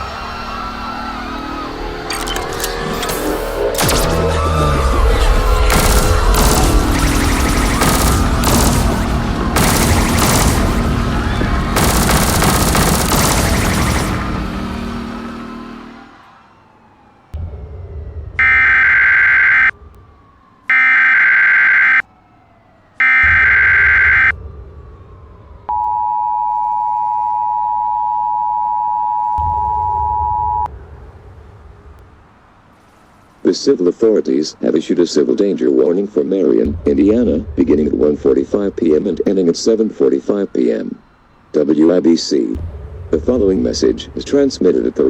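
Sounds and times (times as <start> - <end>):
music: 0.0 - 18.9, 42.6 - 44.4
automatic gunfire: 5.7 - 14.7.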